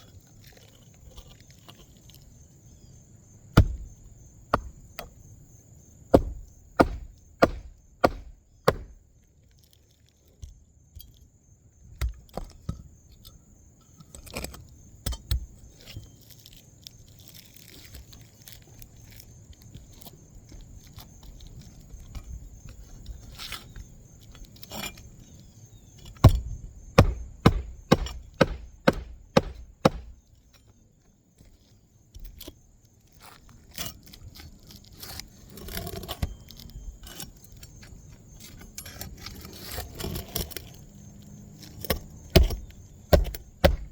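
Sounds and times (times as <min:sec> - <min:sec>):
hammer driving nails: 0:06.2 - 0:09.0, 0:27.0 - 0:30.2, 0:41.9 - 0:43.9.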